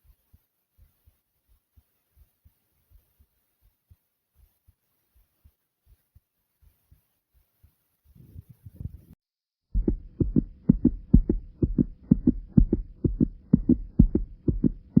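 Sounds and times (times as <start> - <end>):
faint steady hum: 9.8 - 15.0
heartbeat thumping: 9.8 - 15.0.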